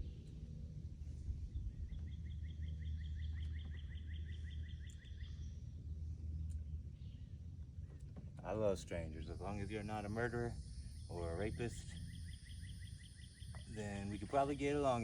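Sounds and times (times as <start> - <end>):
low steady rumble: 0.0 - 15.0
bird trilling chirps: 8.9 - 15.0.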